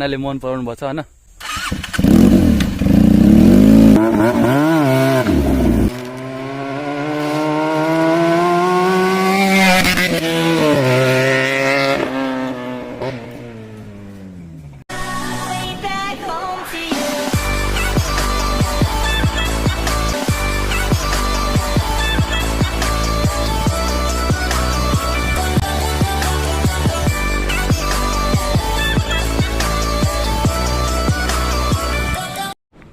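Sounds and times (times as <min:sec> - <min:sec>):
motorcycle engine revving: 0:01.4 - 0:14.8.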